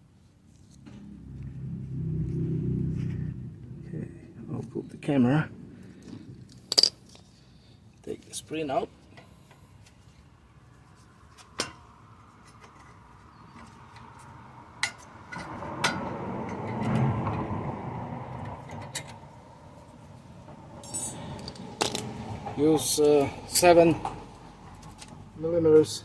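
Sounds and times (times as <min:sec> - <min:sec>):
metallic clicks and clinks: 0:06.5 - 0:07.3.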